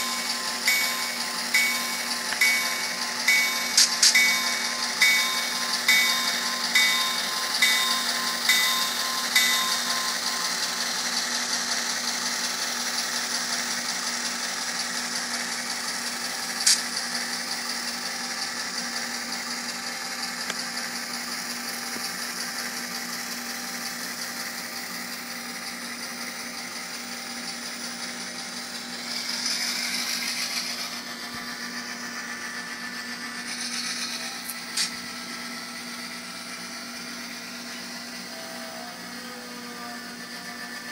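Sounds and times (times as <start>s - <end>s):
locomotive bell ringing: 0.0s - 11.2s
buzzy diesel engine hum: 0.0s - 40.9s.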